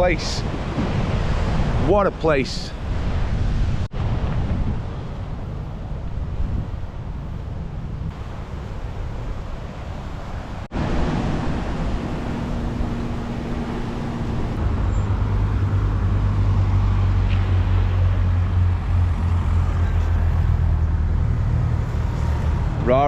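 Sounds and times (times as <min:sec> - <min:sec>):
road noise: 0:00.0 - 0:23.0
vehicle engine hum: 0:09.9 - 0:23.0.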